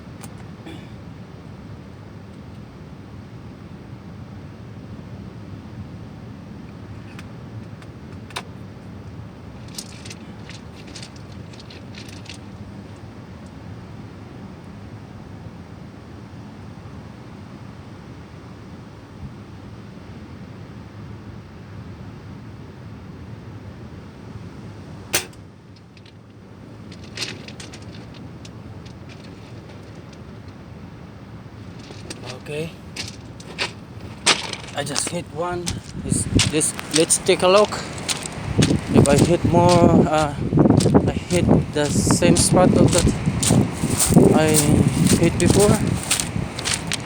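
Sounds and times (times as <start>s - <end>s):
steady low hiss: 0.0s - 47.0s
light clicks and taps: 33.0s - 47.0s.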